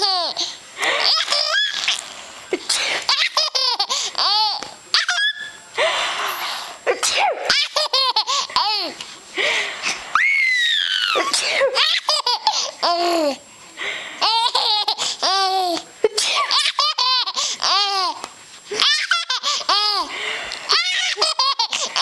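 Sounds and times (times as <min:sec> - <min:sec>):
baby laughing: 0:00.0 - 0:02.0, 0:03.1 - 0:05.5, 0:07.4 - 0:09.0, 0:11.0 - 0:13.3, 0:14.2 - 0:15.8, 0:16.5 - 0:18.2, 0:20.7 - 0:22.0
baby squealing: 0:01.0 - 0:02.0, 0:04.2 - 0:05.6, 0:10.1 - 0:12.0.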